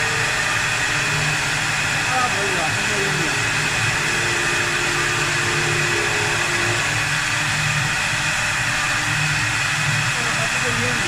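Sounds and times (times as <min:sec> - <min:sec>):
wood lathe whirring: 0:00.0 - 0:11.0.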